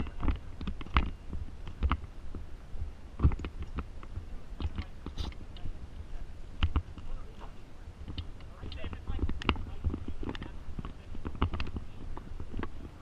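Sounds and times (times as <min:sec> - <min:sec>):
sharp clicks and knocks: 0:00.0 - 0:02.4, 0:03.2 - 0:05.7, 0:06.6 - 0:07.1, 0:08.0 - 0:13.0
steady low rumble: 0:00.0 - 0:13.0.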